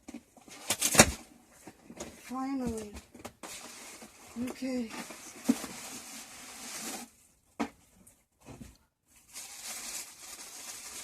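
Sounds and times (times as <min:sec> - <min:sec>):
packing material rustling and tearing: 0:00.4 - 0:01.3, 0:02.2 - 0:07.2, 0:09.2 - 0:11.0.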